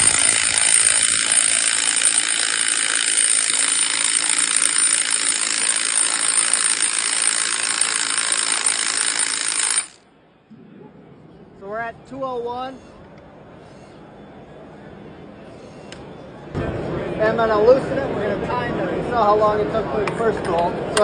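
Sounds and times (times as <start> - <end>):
impact wrench hammering: 0.0 - 10.0.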